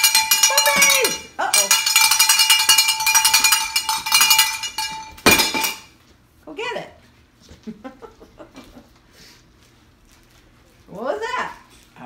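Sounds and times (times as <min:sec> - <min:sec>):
cowbells jangling: 0:00.0 - 0:05.9.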